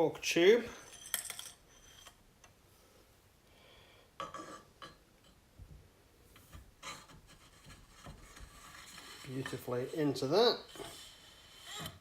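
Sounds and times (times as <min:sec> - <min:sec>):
metal scraping: 0:06.4 - 0:12.0.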